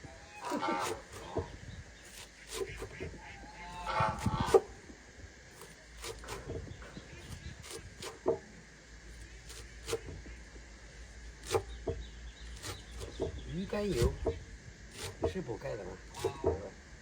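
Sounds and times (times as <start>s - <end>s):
farmyard bird call: 0.1s - 4.6s.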